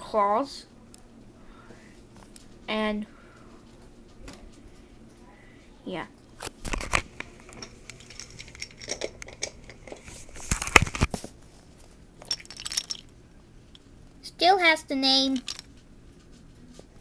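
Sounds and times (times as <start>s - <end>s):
wooden toy clicks and knocks: 15.4s - 15.7s.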